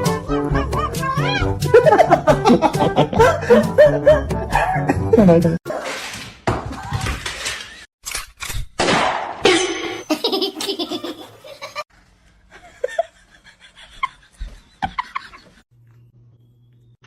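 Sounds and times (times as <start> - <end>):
hearty laughter: 1.7 - 5.2, 12.5 - 15.6.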